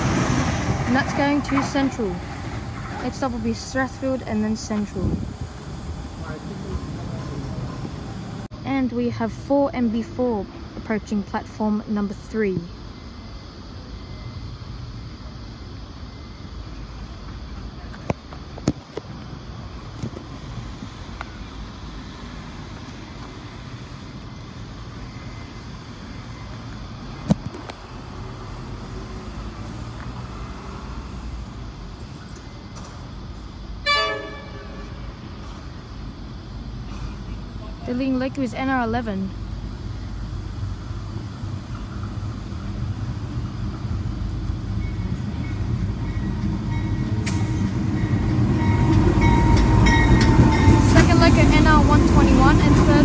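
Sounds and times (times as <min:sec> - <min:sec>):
diesel locomotives rumbling: 0:00.0 - 0:27.2, 0:27.8 - 0:53.0
sharp click: 0:47.2 - 0:47.5.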